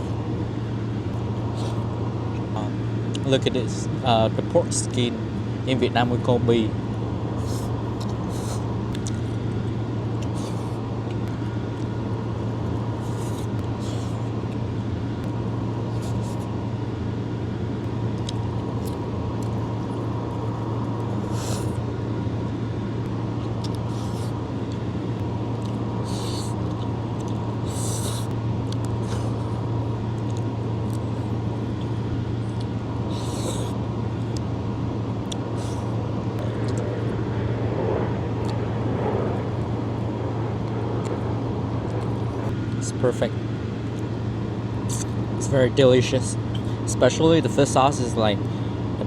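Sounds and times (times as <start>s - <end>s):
low background hum: 0.0s - 49.0s
crisp eating sounds: 1.5s - 2.4s, 7.3s - 12.0s, 12.6s - 14.7s, 15.8s - 16.6s, 23.4s - 34.6s, 44.9s - 45.2s.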